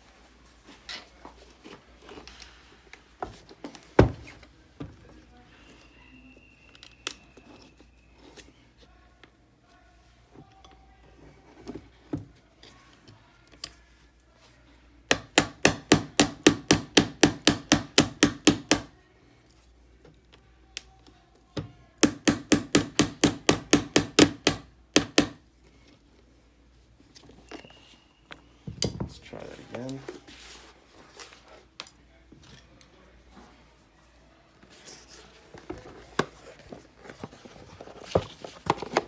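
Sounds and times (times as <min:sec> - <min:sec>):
hammer striking chisel: 0:15.1 - 0:18.9, 0:22.0 - 0:25.4.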